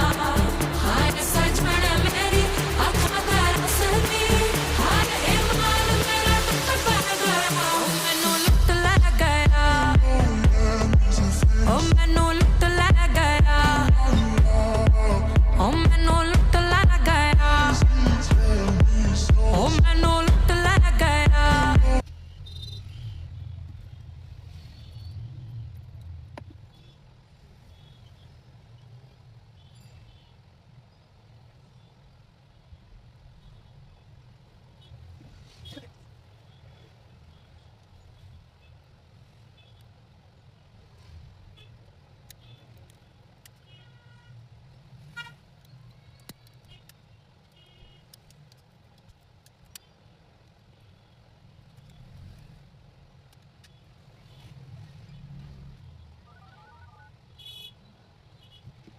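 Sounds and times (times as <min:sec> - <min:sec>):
background music: 0:00.0 - 0:22.0
faint low rumble: 0:08.5 - 0:29.4
sharp clicks: 0:45.6 - 0:50.6.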